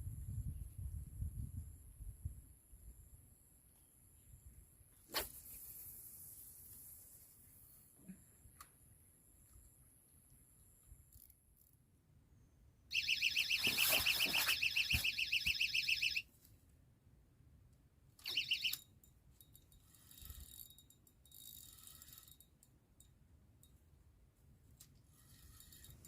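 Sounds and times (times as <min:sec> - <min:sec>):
fishing bite alarm beeping: 0:12.9 - 0:16.2, 0:18.2 - 0:18.8.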